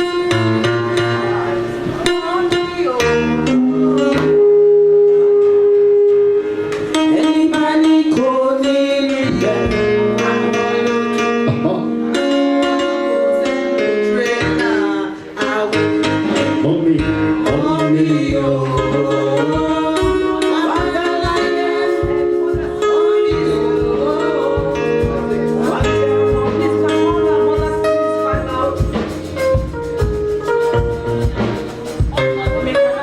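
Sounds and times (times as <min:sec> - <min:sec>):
guitar bass and drums music: 0:09.3 - 0:14.8, 0:16.0 - 0:33.0.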